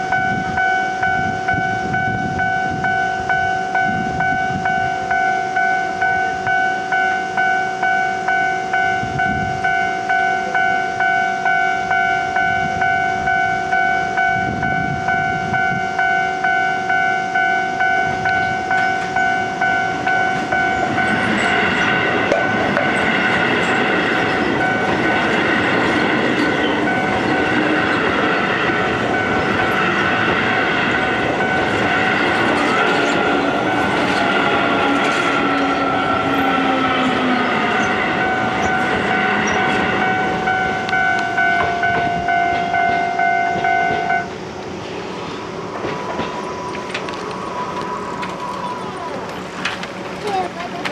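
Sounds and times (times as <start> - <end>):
level-crossing warning bell: 0.0 - 50.9
train wheels clattering over rails: 17.9 - 50.9.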